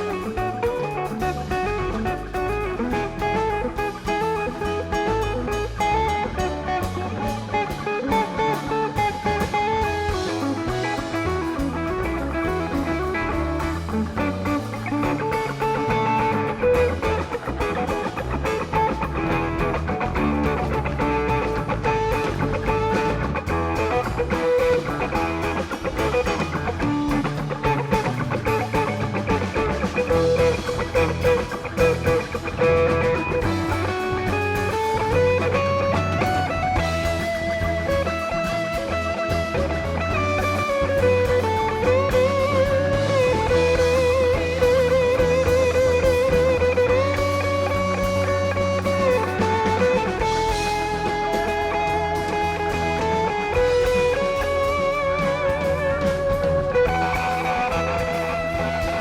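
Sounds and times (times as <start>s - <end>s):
bass and drums: 0.0s - 59.0s
electric guitar: 0.0s - 59.0s.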